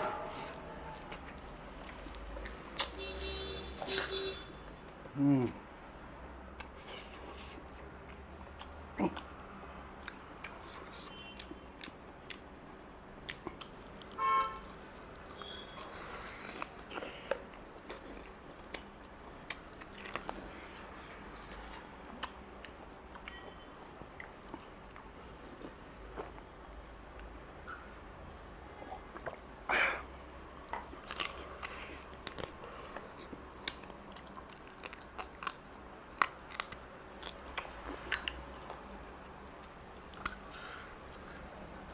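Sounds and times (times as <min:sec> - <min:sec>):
chewing and biting food: 0:00.2 - 0:05.6, 0:06.6 - 0:12.6, 0:13.2 - 0:26.5, 0:28.8 - 0:29.5, 0:30.1 - 0:41.9.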